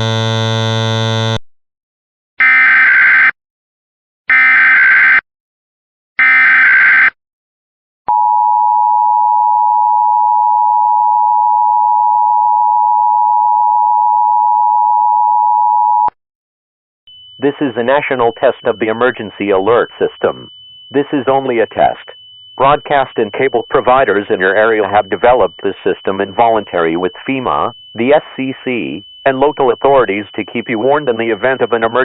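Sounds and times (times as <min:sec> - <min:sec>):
two-tone alert signal: 0:00.0 - 0:01.4, 0:17.1 - 0:32.0
warbling digital data tones: 0:17.1 - 0:32.0.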